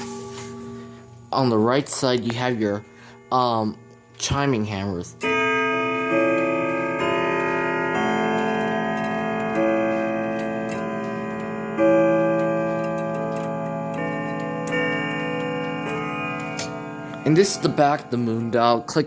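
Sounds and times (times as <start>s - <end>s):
slow ringing melodic notes: 0.0s - 19.0s
clock ticking: 5.2s - 19.0s.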